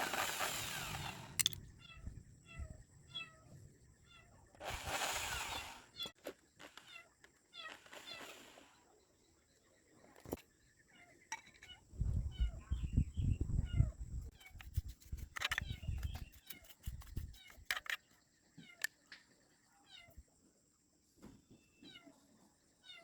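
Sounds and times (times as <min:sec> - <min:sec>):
sharp clicks: 0:00.8 - 0:01.7.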